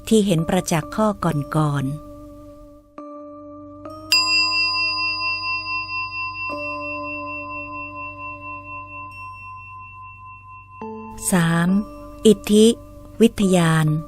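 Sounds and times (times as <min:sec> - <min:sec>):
bright bell-like chime: 0:03.9 - 0:13.0
soft sustained notes: 0:04.0 - 0:14.0.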